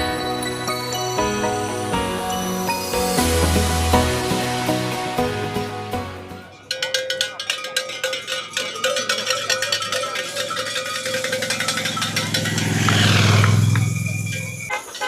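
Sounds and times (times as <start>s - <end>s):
rapid ticking: 6.7s - 14.7s
motor vehicle passing: 10.6s - 14.7s.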